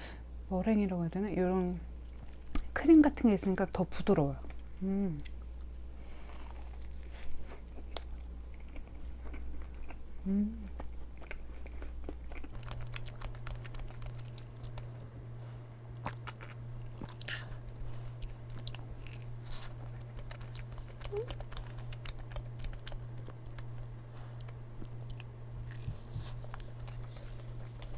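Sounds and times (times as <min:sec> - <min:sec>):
chewing crunchy tart: 0:04.4 - 0:27.9
person humming: 0:04.8 - 0:05.2, 0:10.2 - 0:10.7, 0:20.8 - 0:21.5.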